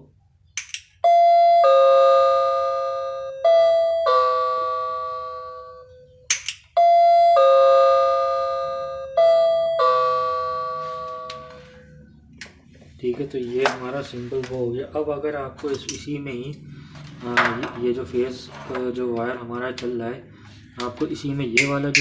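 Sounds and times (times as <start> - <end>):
doorbell click: 1.0 - 6.0, 6.7 - 11.8
electronic doorbell chime: 1.0 - 12.0.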